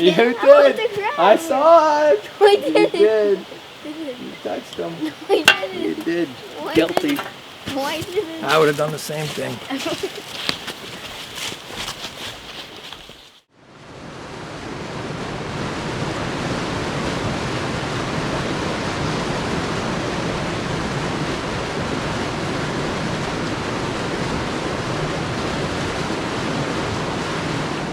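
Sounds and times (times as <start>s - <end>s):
stream water rushing: 0.0s - 11.8s.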